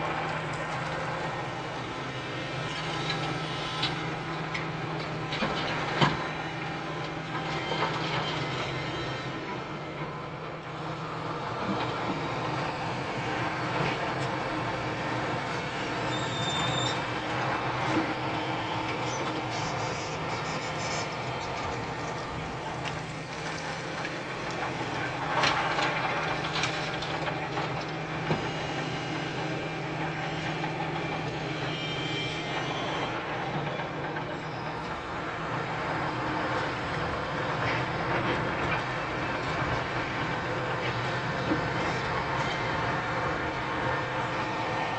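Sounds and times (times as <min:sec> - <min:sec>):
excavator diesel drone: 0:00.0 - 0:44.9
high metallic squeals: 0:15.9 - 0:23.2.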